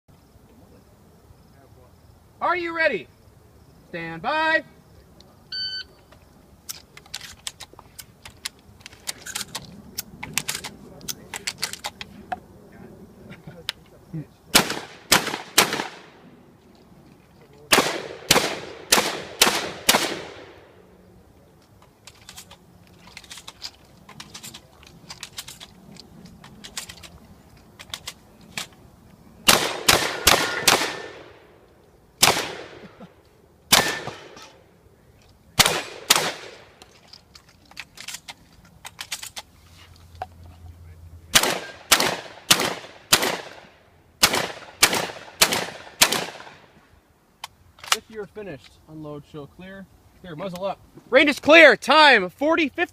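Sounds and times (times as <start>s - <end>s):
shells clicking into gun: 6.6s - 12.1s, 21.6s - 28.8s, 35.2s - 39.5s, 47.4s - 48.7s
shotgun shots: 14.5s - 16.2s, 17.7s - 20.6s, 29.4s - 31.5s, 32.2s - 32.9s, 33.7s - 34.6s, 35.6s - 36.8s, 41.3s - 46.6s.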